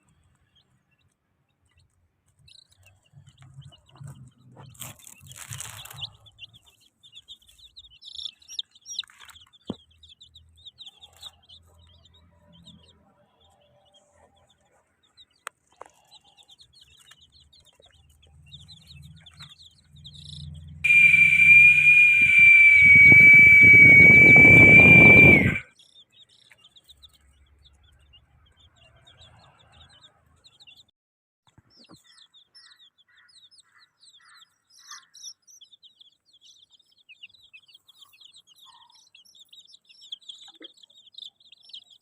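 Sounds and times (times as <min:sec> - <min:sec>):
chicks peeping: 0:00.0 - 0:30.9, 0:31.5 - 0:42.0
loud steady high tone: 0:20.9 - 0:25.6.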